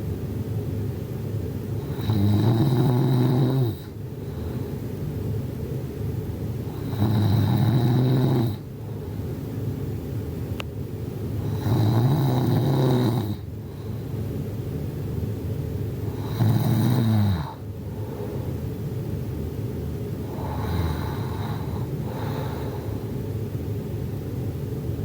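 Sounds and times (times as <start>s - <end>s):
person snoring: 1.8s - 3.9s, 6.8s - 8.6s, 11.4s - 13.4s, 16.1s - 17.6s, 20.3s - 22.8s
quiet breathing: 3.7s - 5.0s, 11.4s - 14.3s, 16.0s - 16.8s, 17.4s - 18.7s, 20.2s - 23.3s.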